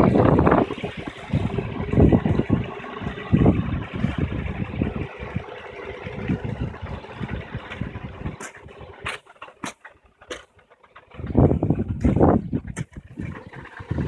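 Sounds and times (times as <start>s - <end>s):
irregular low rumble: 0.0s - 9.2s
car engine idling: 0.0s - 14.0s.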